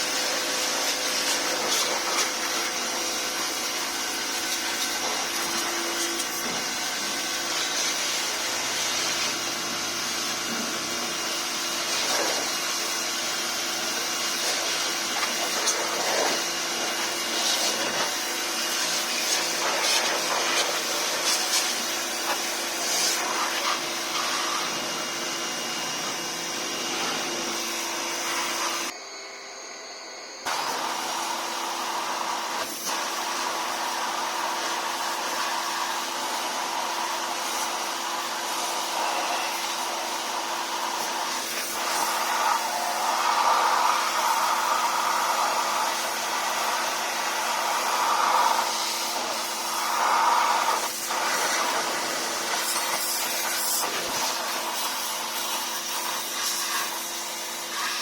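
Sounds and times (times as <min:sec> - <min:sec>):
whirring machine with whine: 0:00.5 - 0:31.5.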